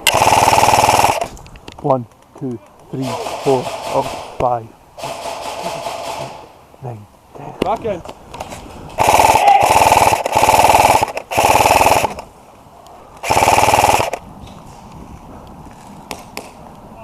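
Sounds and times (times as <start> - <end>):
airsoft machine gun bursts: 0.0 - 1.3, 9.0 - 12.3, 13.2 - 14.2.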